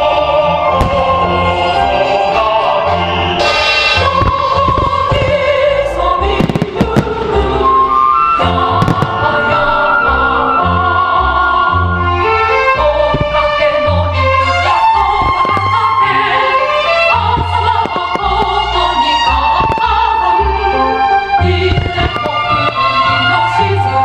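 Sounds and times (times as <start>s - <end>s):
orchestral music with singing: 0.0s - 24.0s
fireworks bursting: 0.7s - 2.4s, 3.4s - 10.6s, 13.0s - 20.4s, 21.5s - 24.0s.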